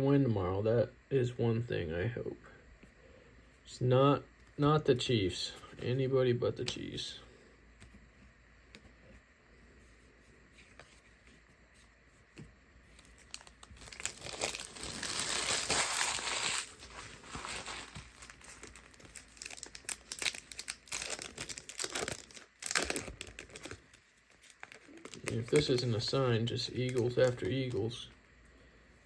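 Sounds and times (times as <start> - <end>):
plastic wrapper tearing and crinkling: 13.0 - 27.8.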